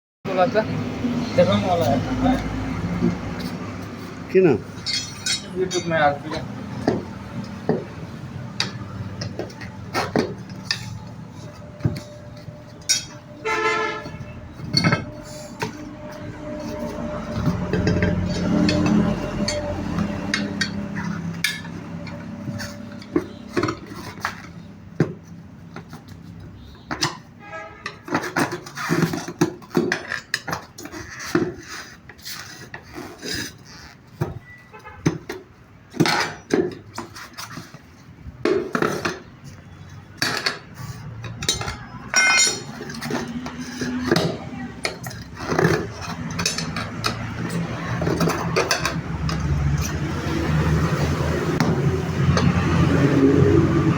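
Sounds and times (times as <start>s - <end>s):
hand tools clanking on metal: 3.0s - 25.2s, 35.0s - 52.8s.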